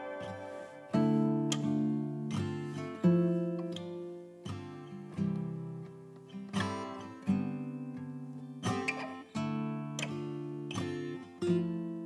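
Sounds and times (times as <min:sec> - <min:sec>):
acoustic guitar strumming chords: 0:00.0 - 0:12.0.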